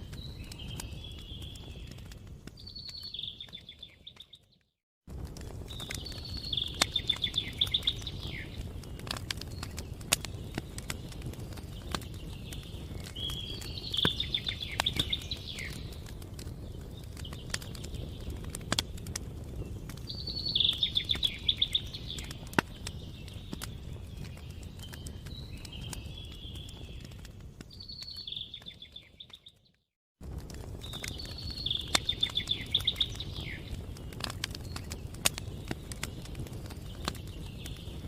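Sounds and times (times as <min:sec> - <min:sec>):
wood fire crackling and popping: 0:00.0 - 0:38.0
songbird trilling: 0:06.2 - 0:08.6, 0:20.2 - 0:22.2, 0:31.2 - 0:33.6.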